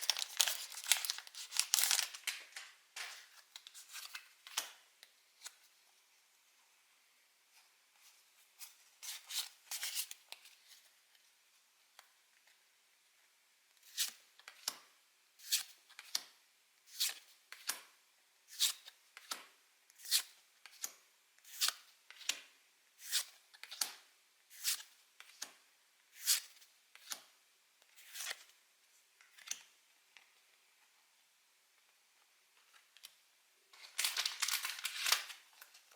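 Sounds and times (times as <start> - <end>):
foil wrapper rustling and tearing: 0.0 - 2.4, 33.8 - 35.5.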